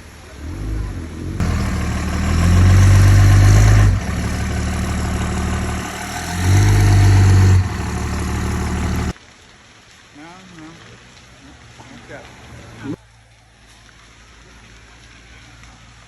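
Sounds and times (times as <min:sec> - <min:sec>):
large engine revving: 0:00.3 - 0:09.1.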